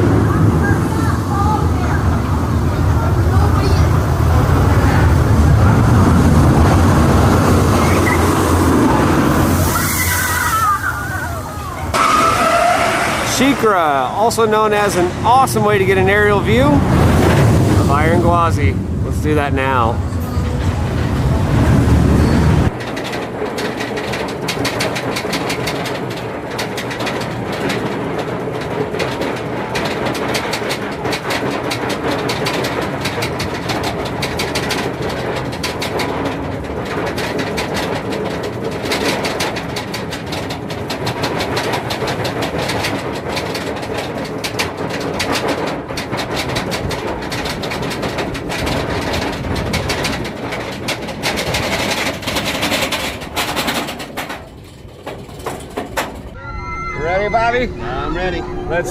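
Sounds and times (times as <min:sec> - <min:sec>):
ride machinery rumble: 0:00.0 - 0:58.9
rattle of clicks: 0:22.7 - 0:56.4.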